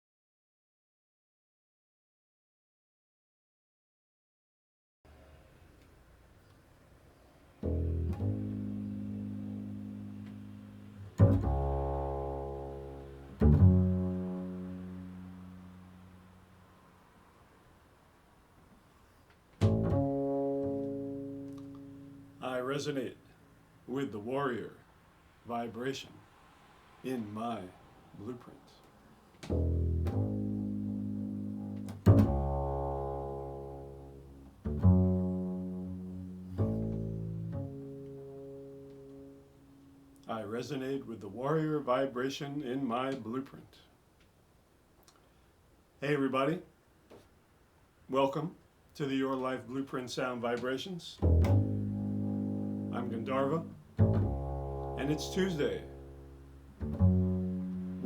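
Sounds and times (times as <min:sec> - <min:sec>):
low plucked string notes: 0:07.6 - 0:16.6, 0:19.6 - 0:22.8, 0:29.5 - 0:40.2, 0:51.2 - 0:58.0.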